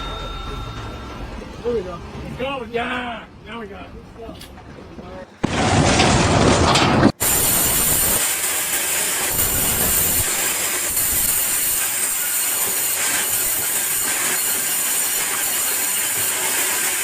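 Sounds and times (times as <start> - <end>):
steady loud hissing: 7.2 - 17.0.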